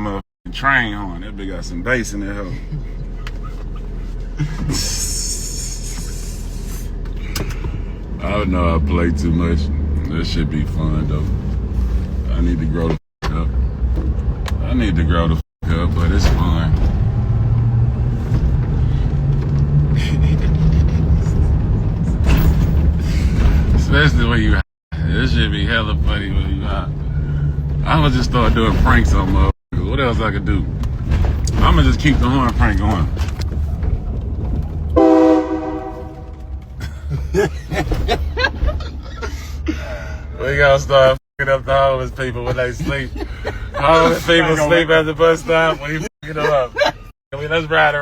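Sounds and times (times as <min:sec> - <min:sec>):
truck engine rumbling: 0:00.0 - 0:48.0
train horn blast: 0:35.0 - 0:36.6.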